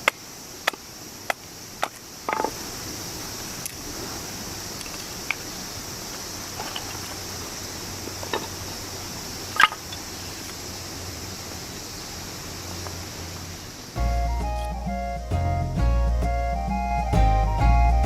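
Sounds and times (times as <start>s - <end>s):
mountain stream rushing: 2.1s - 14.0s
background music with beat: 14.0s - 18.0s.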